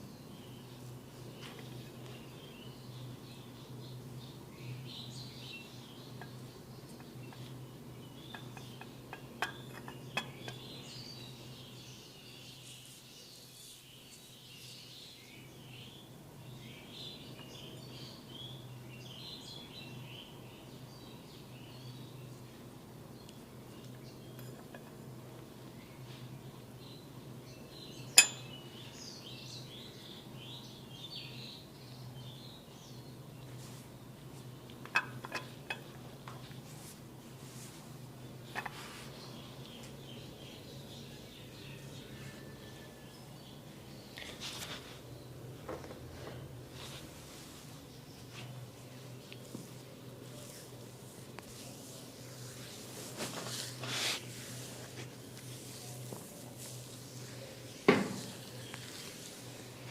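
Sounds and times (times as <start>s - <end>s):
small birds chirping: 0.0s - 36.9s, 38.1s - 45.5s, 47.7s - 59.9s
sharp ringing click: 28.2s - 28.6s.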